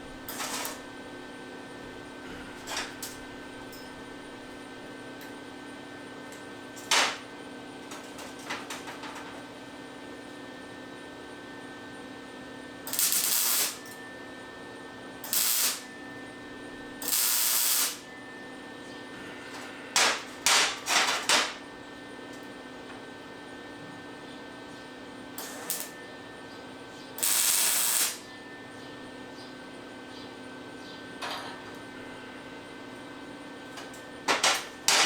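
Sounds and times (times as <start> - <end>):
welder hum: 12.8 - 13.9, 15.2 - 15.9, 17.0 - 18.0, 25.4 - 26.0, 27.2 - 28.4
welding bursts: 12.9 - 13.8, 15.3 - 15.9, 17.0 - 18.0, 25.4 - 26.0, 27.2 - 28.3.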